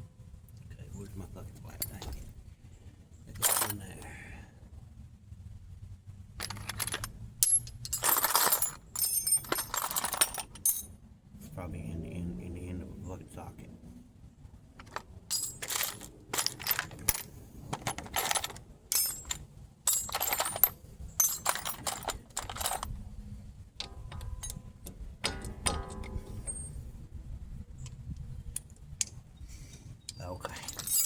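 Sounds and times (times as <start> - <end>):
metal tools clinking and clattering: 1.7 - 2.3, 3.3 - 3.9, 6.4 - 10.9, 14.8 - 23.0, 23.8 - 26.9, 30.4 - 31.0.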